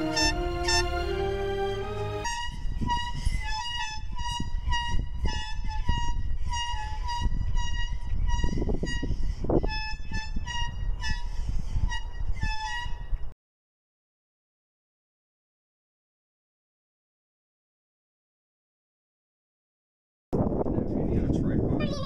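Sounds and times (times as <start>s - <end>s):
air horn short blasts: 0.0s - 13.1s.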